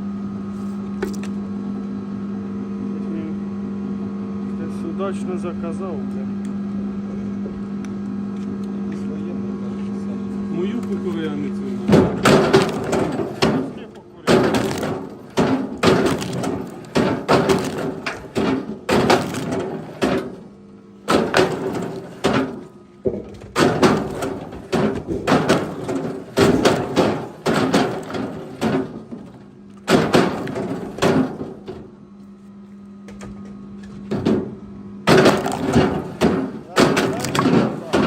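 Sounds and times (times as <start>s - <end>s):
wooden knocks and thuds: 11.9s - 20.5s, 21.1s - 32.0s, 33.1s - 38.0s.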